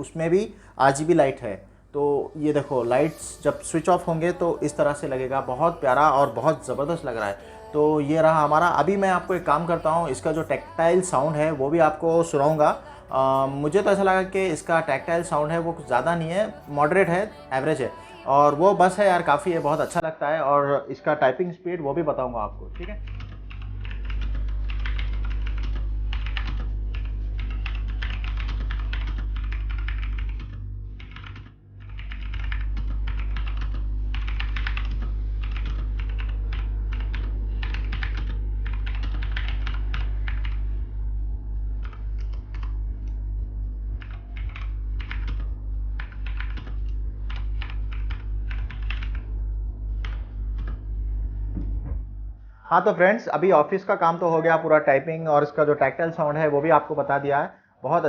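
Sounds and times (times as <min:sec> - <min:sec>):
mechanical keyboard typing: 0:22.8 - 0:40.6, 0:44.0 - 0:49.2.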